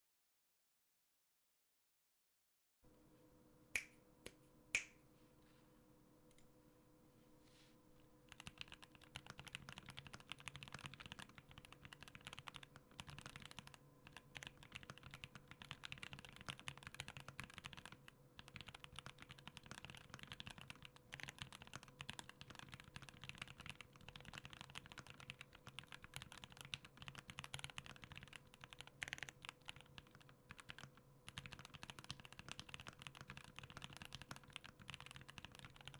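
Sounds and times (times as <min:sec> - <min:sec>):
typing on mechanical keyboard: 0:08.3 - 0:35.9.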